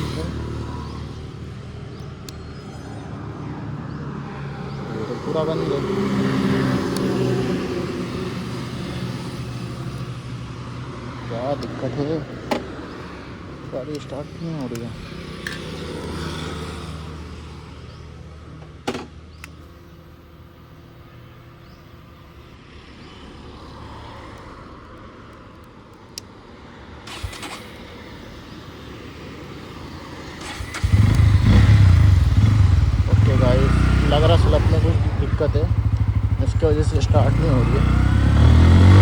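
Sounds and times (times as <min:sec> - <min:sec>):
sharp clicks: 0:02.0 - 0:02.5, 0:13.8 - 0:16.3, 0:19.4 - 0:19.7
motorcycle engine running: 0:30.4 - 0:39.0.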